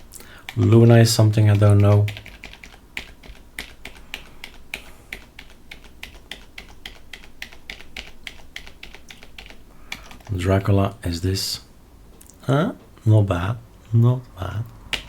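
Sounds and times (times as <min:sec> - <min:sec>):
computer keyboard clicking: 0:01.4 - 0:10.3.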